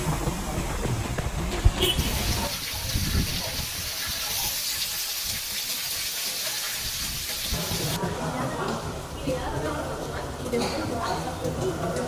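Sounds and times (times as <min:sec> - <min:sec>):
fast-flowing water rushing: 0:02.0 - 0:08.0.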